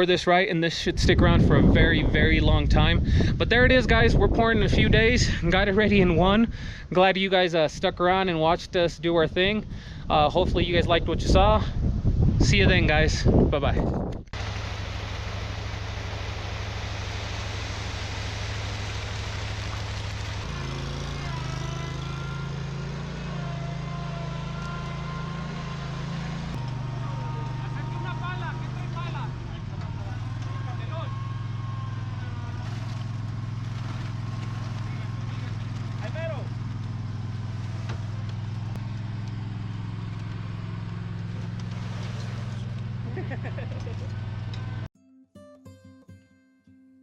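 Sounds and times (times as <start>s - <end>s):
high-pitched engine whine: 14.4s - 44.9s
large engine humming: 14.4s - 44.9s.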